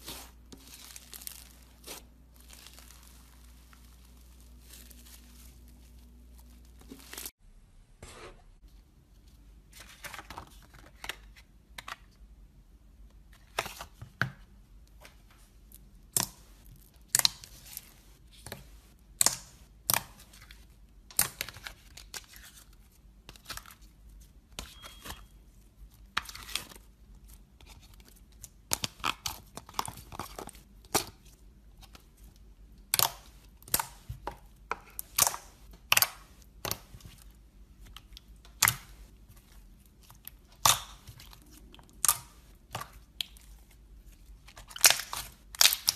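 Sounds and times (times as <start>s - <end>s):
material crackling and crunching: 0.0s - 7.4s.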